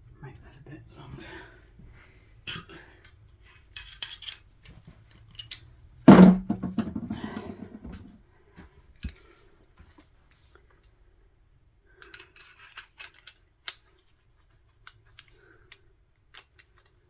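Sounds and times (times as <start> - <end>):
light metal rattling: 6.1 - 8.1
metal tools clinking: 12.0 - 13.8.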